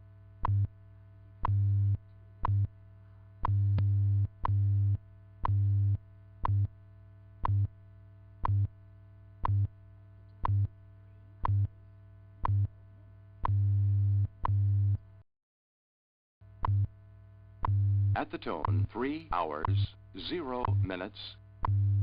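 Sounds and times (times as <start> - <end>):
low buzzing pulses: 16.5 - 22.0.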